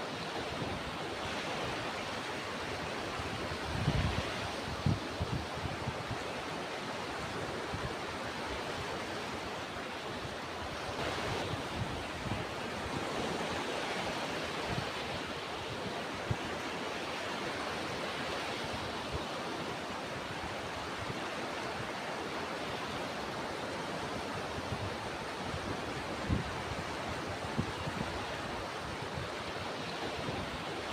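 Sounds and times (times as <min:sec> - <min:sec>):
wind bumps on microphone: 0:03.7 - 0:06.2.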